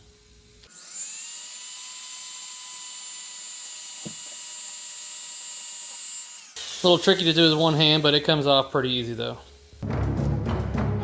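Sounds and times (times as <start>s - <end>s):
power tool high-pitched whine: 0.0s - 9.8s.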